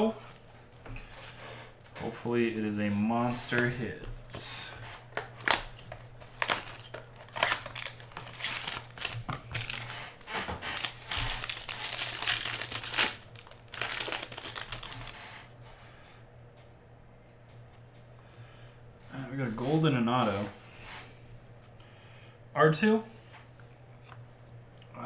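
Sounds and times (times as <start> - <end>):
plastic wrapping crinkling and tearing: 4.4 - 15.4.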